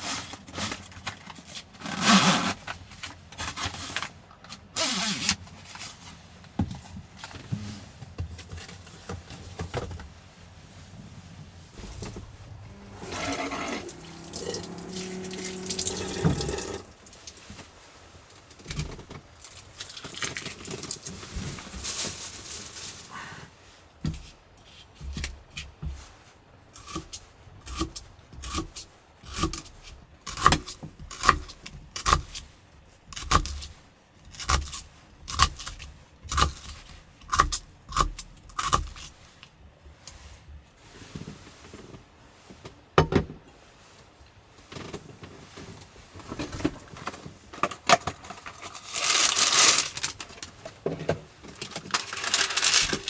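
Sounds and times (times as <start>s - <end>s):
sharp knocks with low thud: 11.8s - 14.0s
water filling a container: 13.9s - 17.2s.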